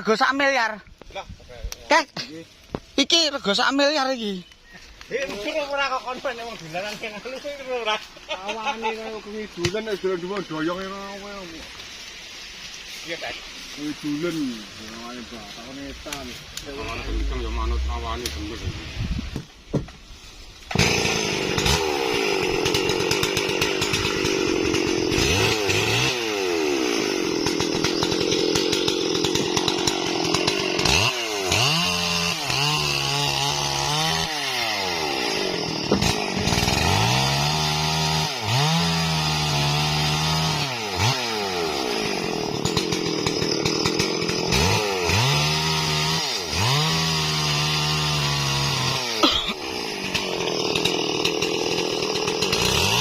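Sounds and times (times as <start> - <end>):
chainsaw running at high revs: 15.0 - 18.6, 20.7 - 53.0.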